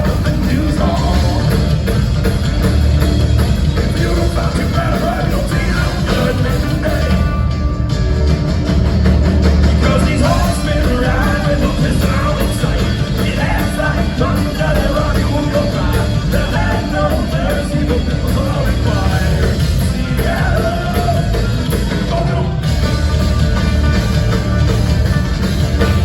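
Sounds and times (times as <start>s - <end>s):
live metal bluegrass band playing: 0.0s - 26.0s.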